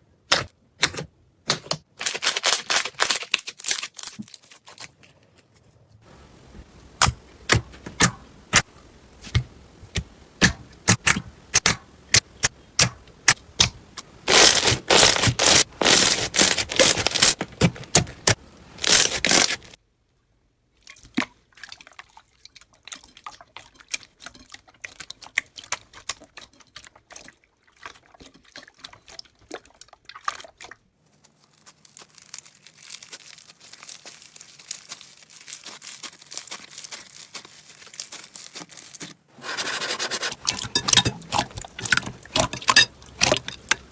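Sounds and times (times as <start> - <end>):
slime rubbing hiss: 14.3 - 17.4, 39.4 - 40.5
slime popping and crackling: 14.3 - 19.8, 31.2 - 39.3.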